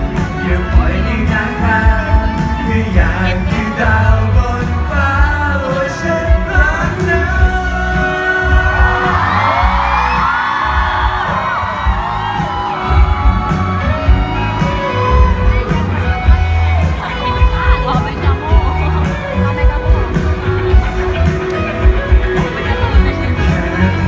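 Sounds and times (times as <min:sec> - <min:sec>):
live pop song over loudspeakers: 0:00.0 - 0:24.0
crowd screaming: 0:04.8 - 0:24.0.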